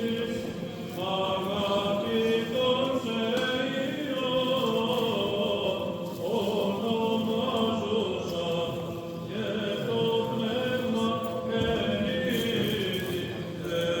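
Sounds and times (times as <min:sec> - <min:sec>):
men chanting a hymn: 0:00.0 - 0:14.0.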